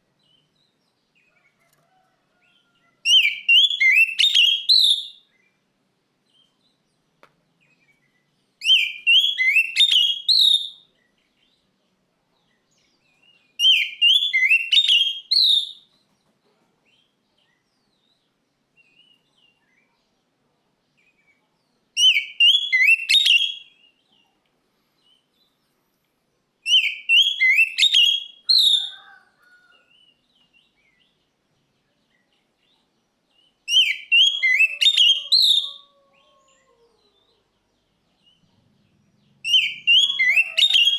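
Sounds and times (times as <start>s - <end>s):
bird singing rapid notes: 38.3s - 40.9s.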